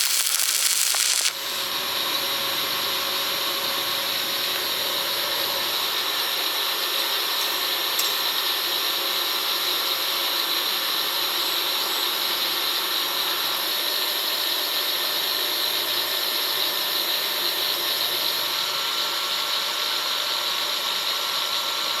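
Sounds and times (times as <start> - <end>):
welding arc hissing: 0.0 - 2.4.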